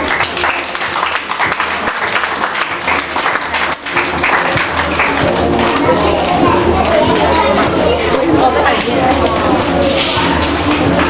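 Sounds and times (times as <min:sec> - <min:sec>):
audience clapping: 0:00.0 - 0:07.4
music playing: 0:00.0 - 0:11.0.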